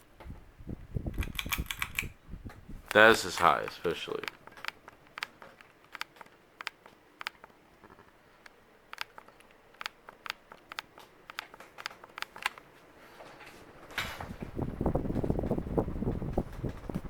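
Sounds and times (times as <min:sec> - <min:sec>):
ceiling fan clicks and ticks: 0:00.0 - 0:17.0
faint steady hiss: 0:01.9 - 0:17.0
air rushing on microphone: 0:14.0 - 0:17.0.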